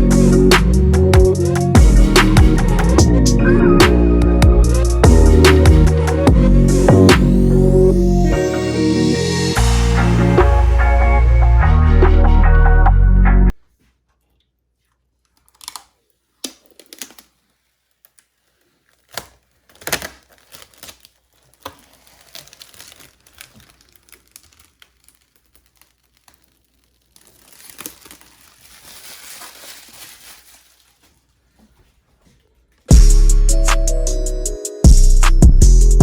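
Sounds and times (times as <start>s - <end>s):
plastic packaging crinkling: 15.2s - 32.8s
packaging rustling: 15.3s - 32.9s.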